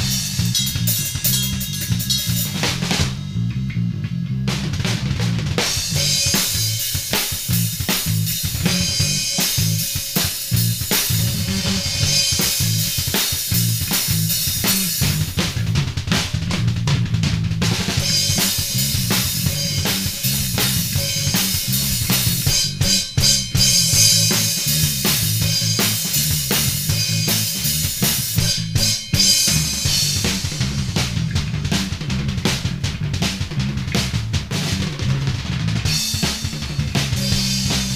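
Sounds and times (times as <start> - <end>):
cymbals: 0.0 - 3.4, 5.6 - 15.2, 18.0 - 30.8, 35.9 - 37.9
drum kit funk groove: 0.0 - 37.9
low bass guitar notes: 0.0 - 37.9.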